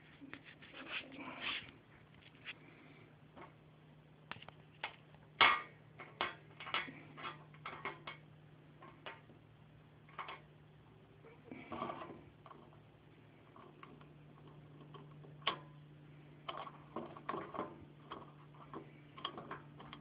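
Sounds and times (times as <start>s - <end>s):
faint steady hum: 0.0s - 20.0s
plastic cogs clicking and knocking: 4.3s - 8.2s, 10.1s - 10.5s, 13.5s - 15.8s, 16.4s - 20.0s.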